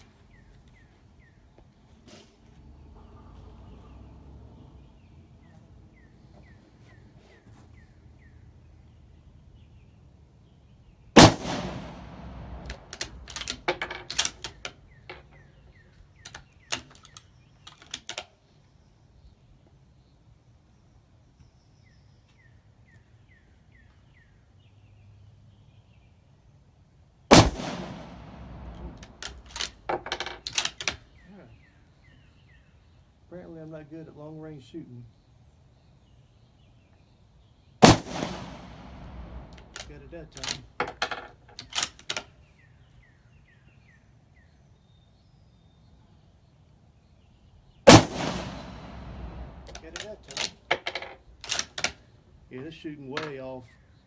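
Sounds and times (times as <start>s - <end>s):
bird chirping: 0.0s - 2.0s, 2.6s - 11.2s, 11.9s - 26.8s, 28.0s - 54.0s
rifle shot with echo: 11.2s - 13.6s, 27.3s - 29.5s, 37.8s - 40.0s, 47.9s - 50.2s.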